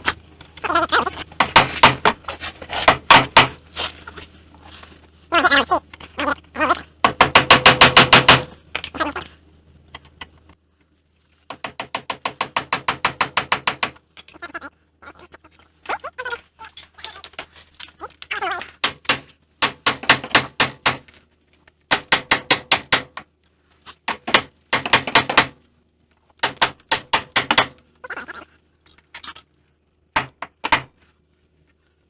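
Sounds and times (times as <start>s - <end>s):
hammer striking metal chisel: 1.4s - 3.6s, 7.0s - 8.6s, 11.5s - 14.0s, 18.8s - 21.2s, 21.9s - 23.2s, 24.1s - 25.6s, 26.4s - 27.8s.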